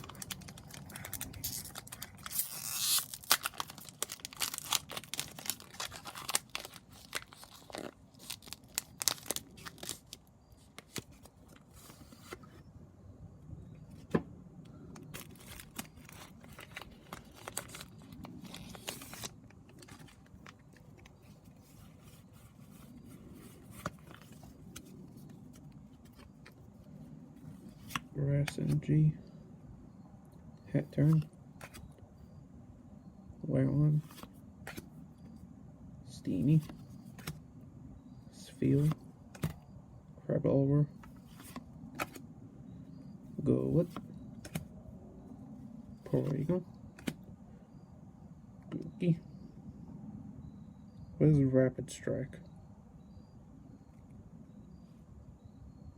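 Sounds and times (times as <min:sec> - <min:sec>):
foil wrapper tearing and crinkling: 0:00.0 - 0:10.2, 0:15.2 - 0:20.1
wrapper rustling and handling: 0:00.0 - 0:12.1, 0:15.1 - 0:26.7.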